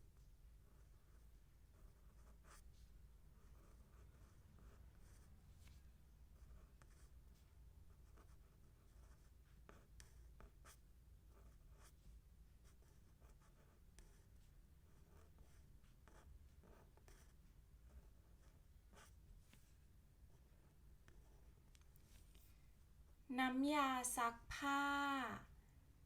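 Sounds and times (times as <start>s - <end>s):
pen scratching on paper: 0.6s - 5.8s, 6.4s - 12.0s, 12.6s - 19.7s, 20.3s - 21.8s.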